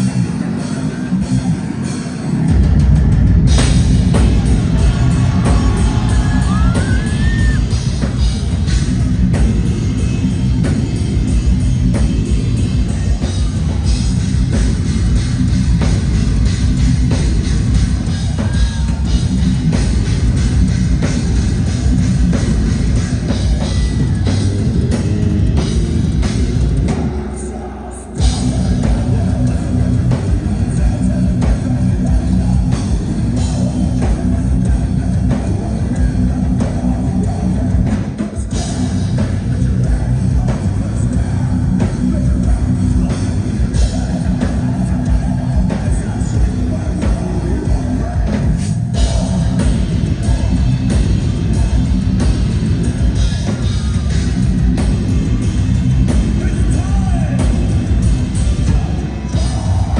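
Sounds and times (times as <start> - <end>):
heavy metal band playing live: 0.0 - 59.9.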